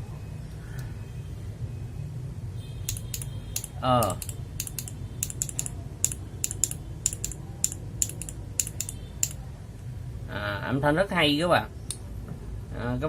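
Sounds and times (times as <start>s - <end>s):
mechanical keyboard typing: 2.9s - 9.4s.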